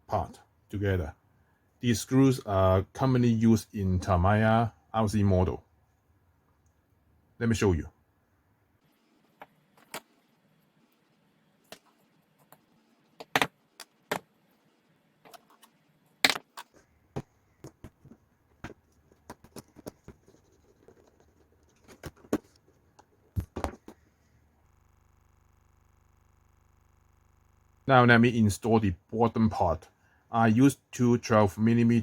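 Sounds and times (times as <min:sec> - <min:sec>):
faint steady hum: 0:00.0 - 0:32.0
plastic parts clicking and knocking: 0:11.7 - 0:14.3, 0:15.2 - 0:24.1.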